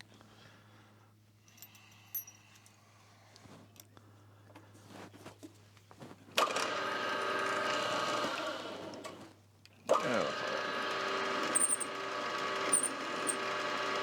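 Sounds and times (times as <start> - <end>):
milling machine motor whine: 9.9 - 14.0
metal parts and tools clicking: 11.6 - 11.9, 12.7 - 13.4.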